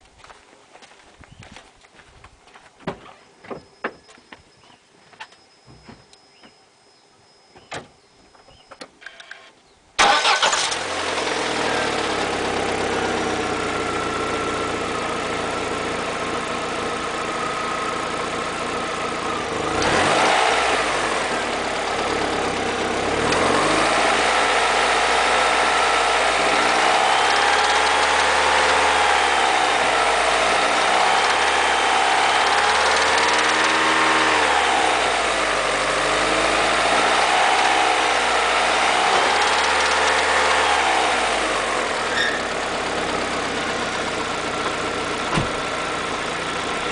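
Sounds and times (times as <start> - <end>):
car engine starting and idling: 9.0 - 46.9
engine revving: 10.0 - 46.8.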